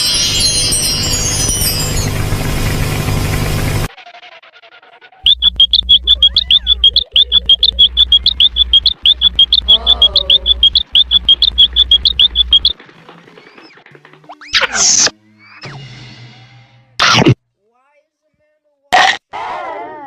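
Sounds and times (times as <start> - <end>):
low hum: 5.3 - 12.8
short high-pitched chirps: 5.3 - 12.8.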